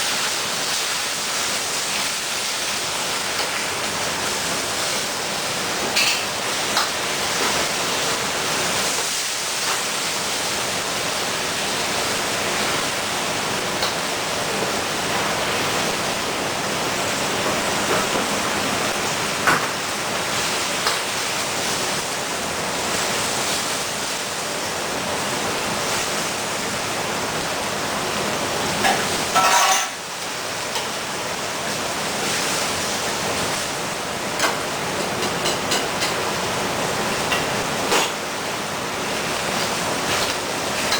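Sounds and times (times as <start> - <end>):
food sizzling in a wok: 0.0 - 40.9
utensil clinking against pan: 28.8 - 30.0.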